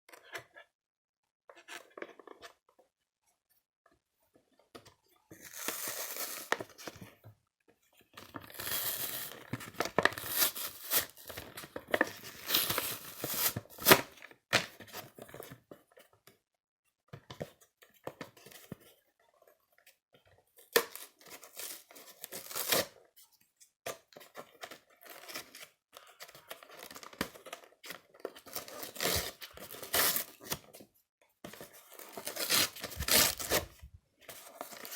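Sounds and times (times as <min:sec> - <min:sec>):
packaging crinkling: 0:08.6 - 0:14.0, 0:31.6 - 0:34.9
packaging tearing: 0:08.6 - 0:14.0, 0:20.9 - 0:22.9, 0:28.5 - 0:30.6, 0:31.9 - 0:33.8.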